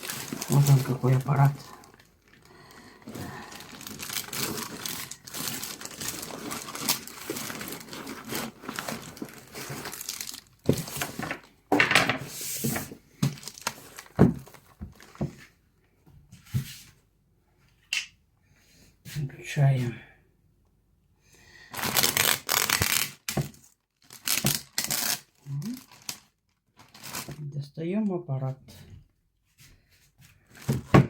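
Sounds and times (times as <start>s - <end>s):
plastic wrapping crinkling and tearing: 0.0s - 11.5s, 13.2s - 15.4s, 21.7s - 27.5s.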